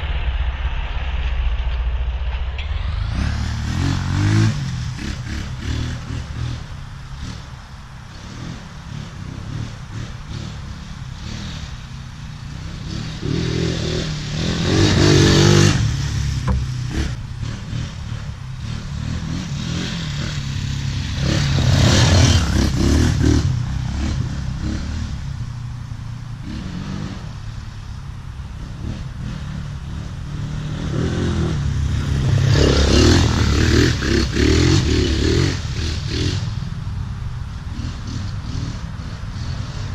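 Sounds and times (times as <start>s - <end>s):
quad engine revving: 2.8s - 7.4s, 8.1s - 25.3s, 26.4s - 27.6s, 28.6s - 36.6s.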